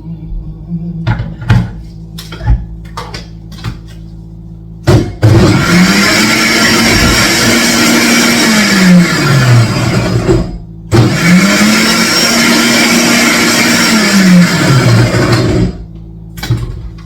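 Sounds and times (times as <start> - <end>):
electric blender running: 4.9 - 15.9.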